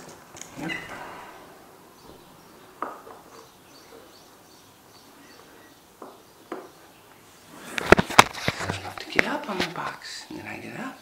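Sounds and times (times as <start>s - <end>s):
fledgling bird chirping: 0.5s - 9.1s.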